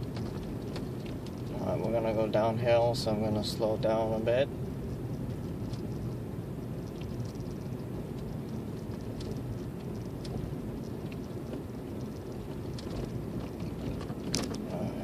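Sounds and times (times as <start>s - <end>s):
car engine and tyres rumbling: 0.0s - 15.0s.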